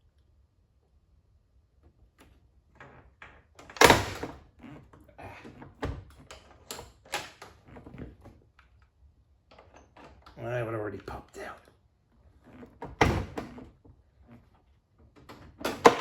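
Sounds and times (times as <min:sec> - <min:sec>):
loud door latch clunk: 0:03.6 - 0:04.4.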